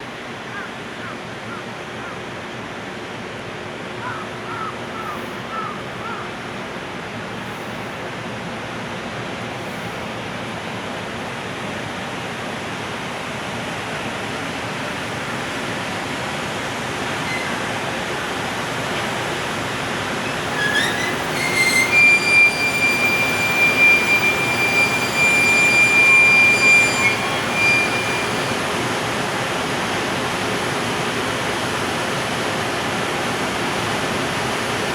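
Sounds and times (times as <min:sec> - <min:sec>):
freight train running: 0:00.0 - 0:34.9
train wheels squealing: 0:14.0 - 0:34.9.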